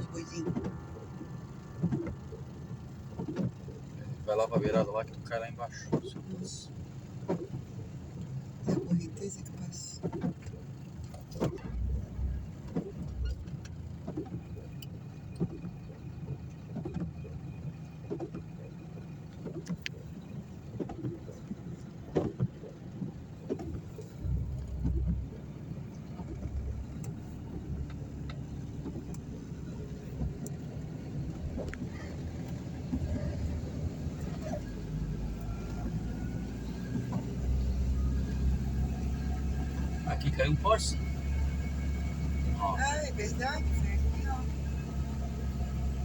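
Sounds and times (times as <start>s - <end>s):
engine rumbling: 0.0s - 46.0s
low thumps: 22.1s - 35.3s.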